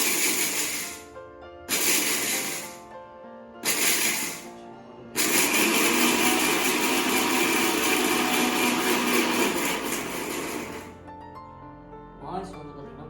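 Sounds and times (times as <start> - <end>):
mixer grinder motor grinding: 0.0 - 1.0, 1.7 - 2.8, 3.6 - 4.6, 5.2 - 11.0.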